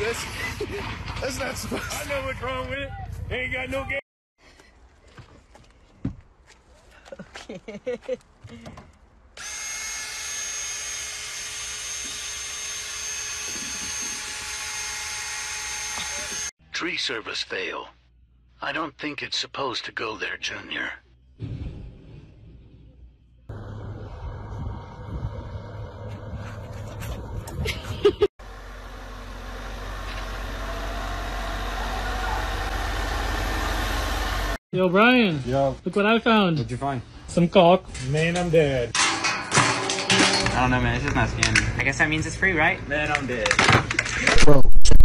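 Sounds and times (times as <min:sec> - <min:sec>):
vehicle engine running: 0:23.5 - 0:34.6.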